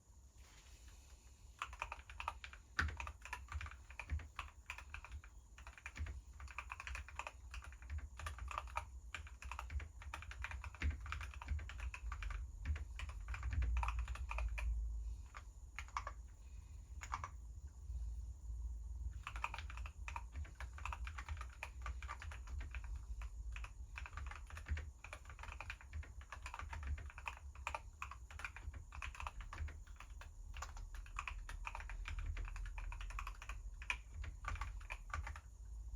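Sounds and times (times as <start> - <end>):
mechanical keyboard typing: 1.6 - 16.4, 17.0 - 17.4, 19.2 - 35.6.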